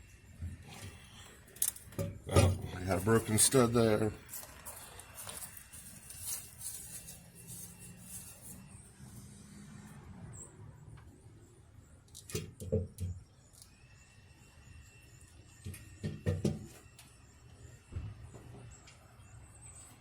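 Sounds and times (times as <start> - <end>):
metal parts and tools clunking: 0.6 - 3.7.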